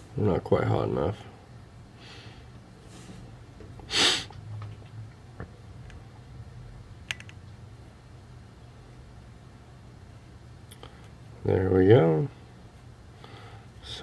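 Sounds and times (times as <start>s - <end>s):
low steady hum: 0.0s - 14.0s
short breathy hiss: 3.9s - 4.3s.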